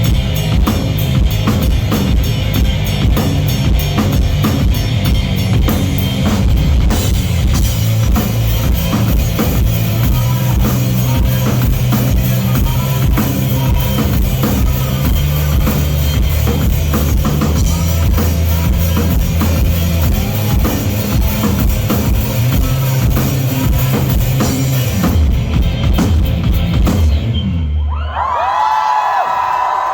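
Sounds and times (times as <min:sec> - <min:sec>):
drum kit: 0:00.0 - 0:27.8
live rock band playing: 0:00.0 - 0:27.8
bass guitar: 0:00.0 - 0:28.5
crowd cheering and shouting: 0:27.5 - 0:29.9.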